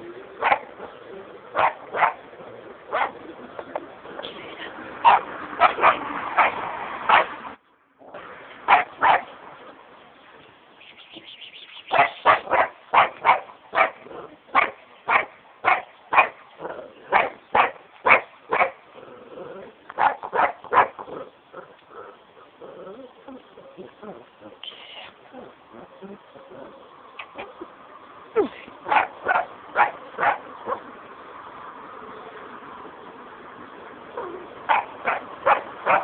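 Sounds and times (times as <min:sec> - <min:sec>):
dog barking: 0:00.4 - 0:00.7, 0:01.5 - 0:02.2, 0:02.9 - 0:03.2, 0:05.0 - 0:07.4, 0:08.7 - 0:09.3, 0:11.9 - 0:16.4, 0:17.1 - 0:18.8, 0:20.0 - 0:21.0, 0:28.8 - 0:30.8, 0:34.2 - 0:36.0.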